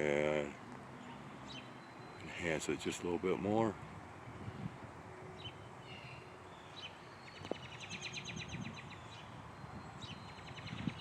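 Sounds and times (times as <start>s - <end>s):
outdoor background hiss: 0.0s - 11.0s
small bird chirping and trilling: 5.4s - 11.0s.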